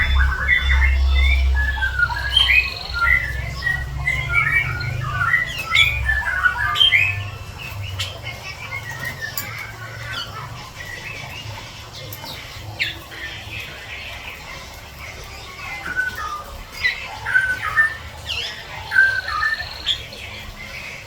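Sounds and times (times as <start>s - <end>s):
low hum: 0.0s - 6.5s
bird chirping song: 0.0s - 21.0s.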